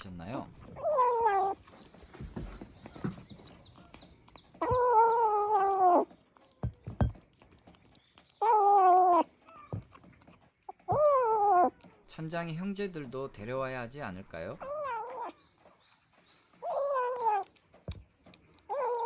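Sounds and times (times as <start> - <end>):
kitten eating clicks: 5.6 - 10.8, 15.0 - 19.0.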